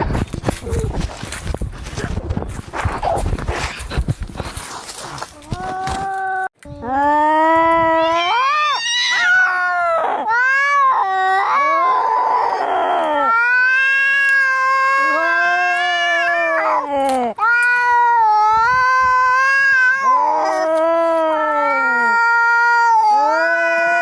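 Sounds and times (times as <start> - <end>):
cats yowling: 7.8 - 24.0.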